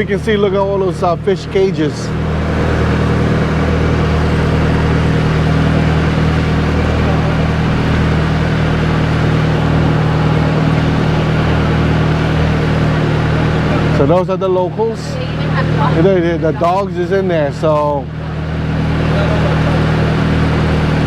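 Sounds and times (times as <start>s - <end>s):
water and hull noise: 0.0s - 16.2s
boat engine droning: 0.0s - 21.0s.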